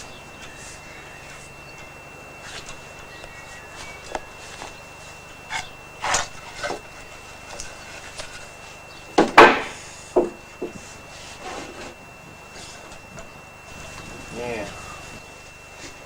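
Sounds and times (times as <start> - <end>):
wood knocking and scraping: 9.1 - 13.3.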